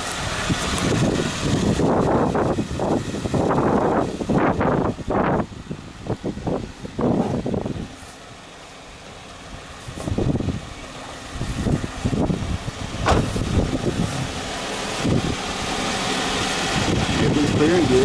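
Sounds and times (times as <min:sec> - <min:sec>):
road and wind noise: 0:00.0 - 0:18.0
vehicle engine running: 0:00.0 - 0:18.0
low thumps: 0:11.4 - 0:15.4.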